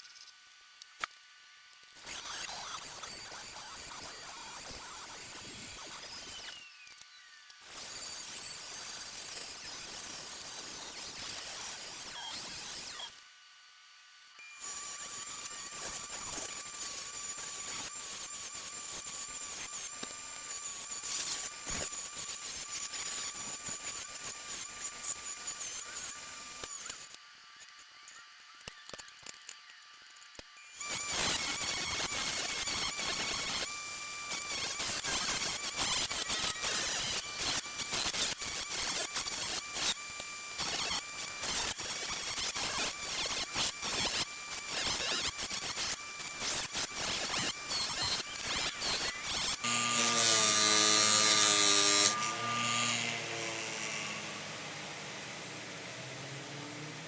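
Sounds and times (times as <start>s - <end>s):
handheld power tool grinding: 1.9s - 7.0s, 14.6s - 27.2s, 30.1s - 57.0s.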